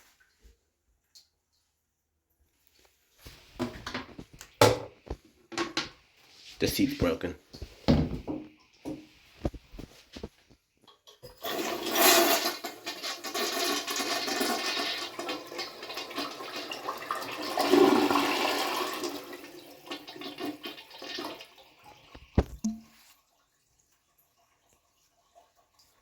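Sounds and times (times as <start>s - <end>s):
toilet flushing: 11.1s - 22.2s.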